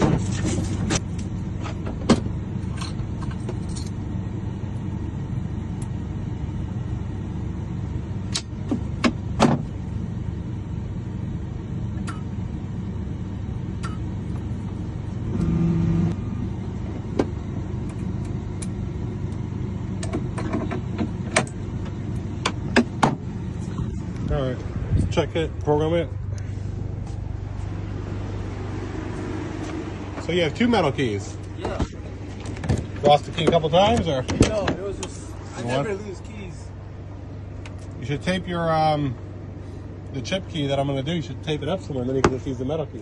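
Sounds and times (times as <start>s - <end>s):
vehicle engine rumbling: 0.0s - 43.0s
short low buzz: 15.1s - 16.5s.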